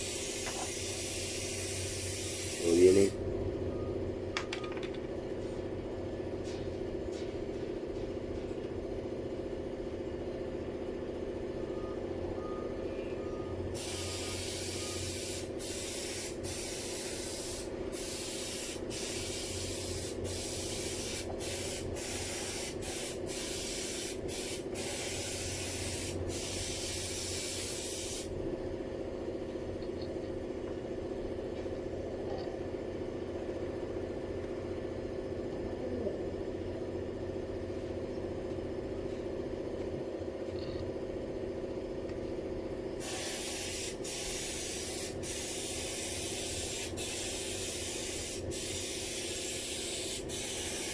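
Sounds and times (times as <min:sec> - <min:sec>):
pressurised spray hissing: 0:00.0 - 0:02.9, 0:13.8 - 0:28.3, 0:43.0 - 0:50.9
steady machine hum: 0:00.0 - 0:50.9.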